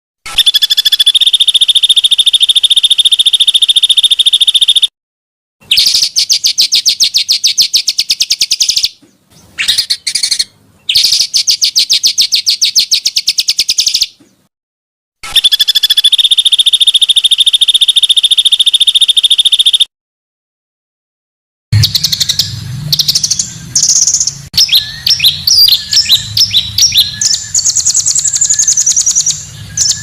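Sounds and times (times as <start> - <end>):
songbirds trilling: 5.6 - 14.4, 21.8 - 30.0.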